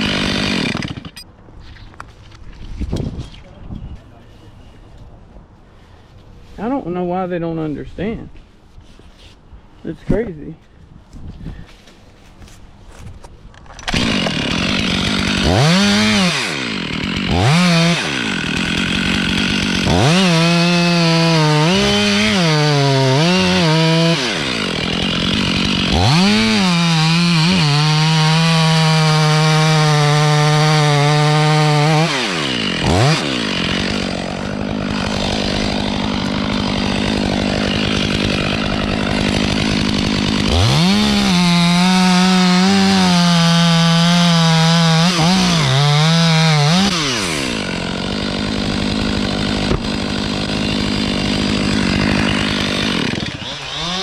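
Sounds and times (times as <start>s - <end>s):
chainsaw revving: 0.0s - 1.2s, 13.8s - 54.0s.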